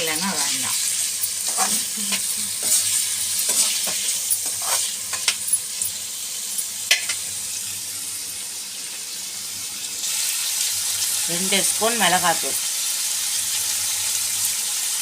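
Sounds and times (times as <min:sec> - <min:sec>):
vegetables sizzling in hot oil: 0:00.0 - 0:15.0
spatula scraping a pan: 0:00.7 - 0:05.6.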